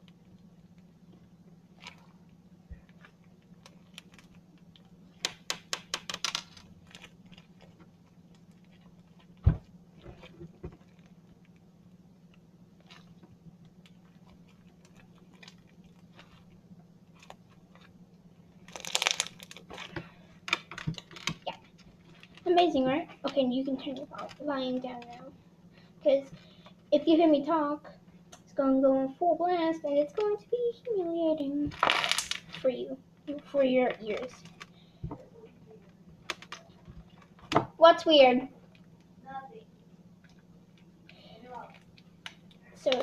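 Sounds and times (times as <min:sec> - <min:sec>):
faint steady hum: 0:00.0 - 0:43.0
slime crackling and popping: 0:01.7 - 0:09.4, 0:18.6 - 0:19.9, 0:31.7 - 0:32.6.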